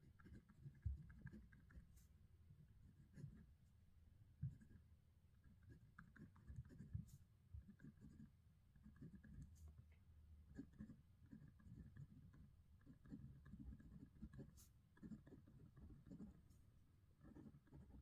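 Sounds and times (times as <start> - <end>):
pen scratching on paper: 0.2 - 2.0, 4.4 - 4.8, 5.4 - 9.6, 10.5 - 16.6, 17.2 - 18.0.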